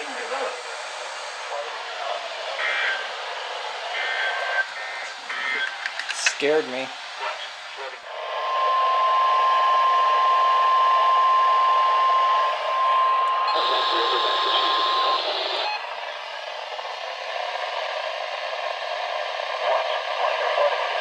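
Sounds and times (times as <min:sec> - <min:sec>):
radio static hiss: 0:00.0 - 0:21.0
steady warning alarm tone: 0:08.2 - 0:16.0.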